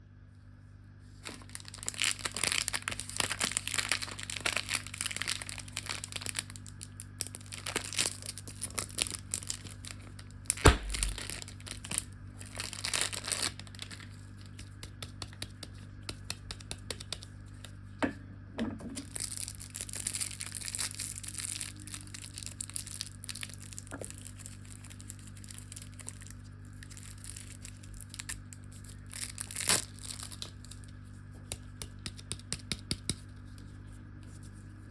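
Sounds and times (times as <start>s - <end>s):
plastic wrappers crinkling: 1.2s - 15.4s, 19.0s - 31.1s.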